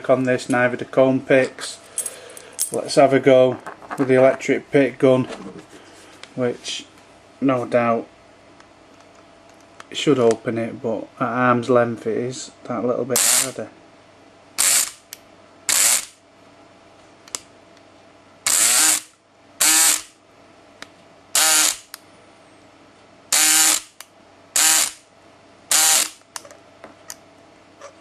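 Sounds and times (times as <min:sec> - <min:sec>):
electric pick gun buzzing: 0:13.2 - 0:13.6, 0:14.6 - 0:15.0, 0:15.7 - 0:16.2, 0:18.5 - 0:20.1, 0:21.4 - 0:22.0, 0:23.3 - 0:24.0, 0:24.6 - 0:25.0, 0:25.7 - 0:26.2.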